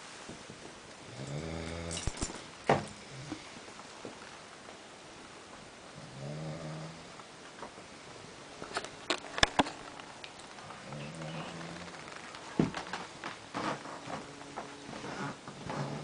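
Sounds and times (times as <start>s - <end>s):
man snoring: 1.1s - 2.0s, 6.0s - 7.1s.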